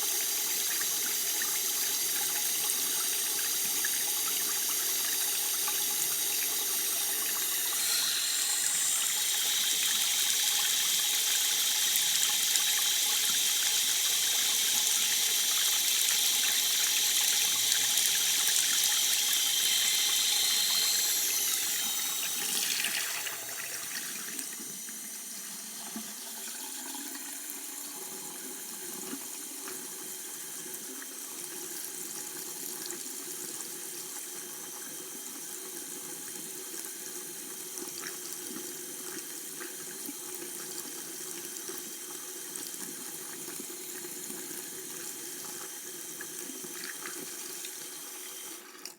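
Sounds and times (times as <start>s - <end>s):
water running from a tap: 0.0s - 48.9s.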